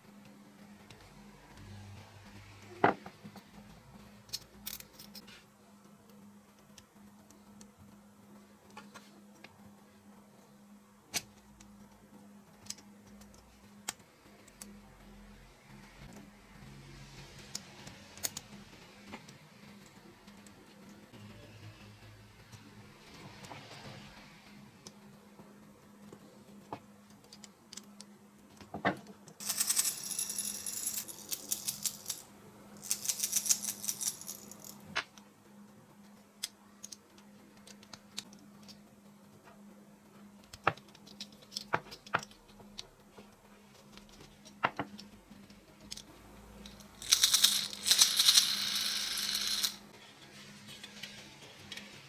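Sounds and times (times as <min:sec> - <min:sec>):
small hard objects rattling: 0:29.4 - 0:35.0, 0:46.7 - 0:49.9.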